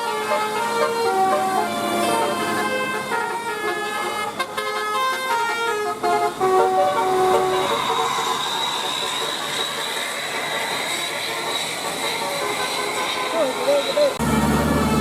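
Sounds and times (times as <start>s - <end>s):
multi-tone bus horn melody: 0.0s - 10.0s, 10.9s - 15.0s
steady rushing noise: 7.2s - 15.0s.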